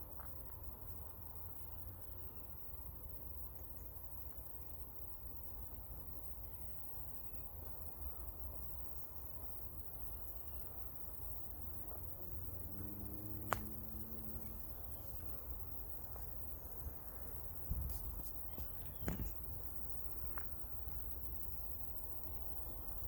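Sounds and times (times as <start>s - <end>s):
high steady hiss: 0.0s - 23.0s
low hum passing: 11.7s - 19.8s.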